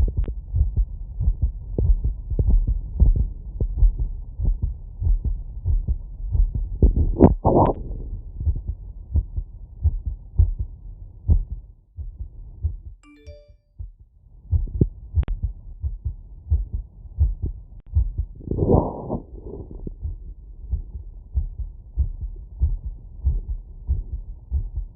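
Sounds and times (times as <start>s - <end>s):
heartbeat through stethoscope: 0.0s - 13.0s, 13.8s - 24.9s
chiming tone: 13.0s - 13.6s.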